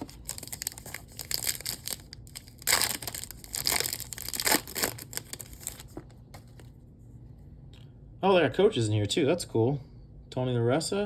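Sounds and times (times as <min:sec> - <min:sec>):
foil wrapper crinkling: 0:00.0 - 0:06.7.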